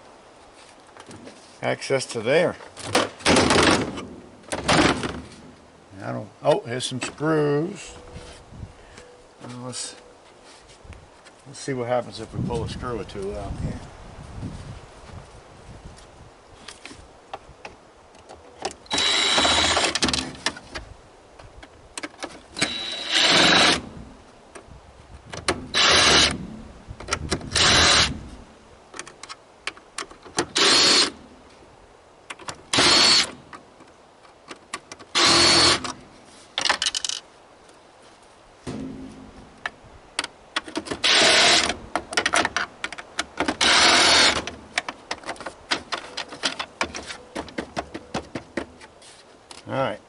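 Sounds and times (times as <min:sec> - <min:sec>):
power drill whirring: 0:18.9 - 0:20.0, 0:22.6 - 0:23.8, 0:25.7 - 0:26.4, 0:27.6 - 0:28.1, 0:30.5 - 0:31.2, 0:32.7 - 0:33.4, 0:35.1 - 0:35.9, 0:41.0 - 0:41.8, 0:43.6 - 0:44.4
handling and metal clinks: 0:36.5 - 0:37.3, 0:44.7 - 0:49.0.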